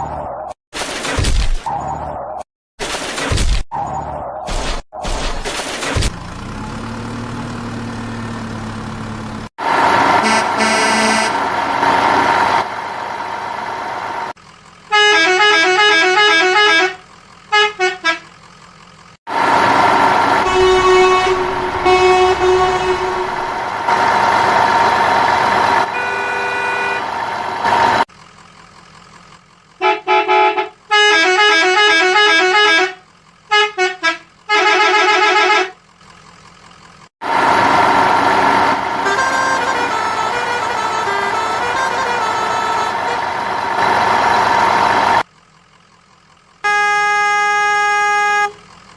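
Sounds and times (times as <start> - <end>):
truck engine: 3.0 - 48.9
horn honks: 9.9 - 11.4, 14.9 - 18.3, 19.5 - 24.1, 25.6 - 28.0, 29.8 - 35.8, 39.0 - 44.0, 46.6 - 48.7.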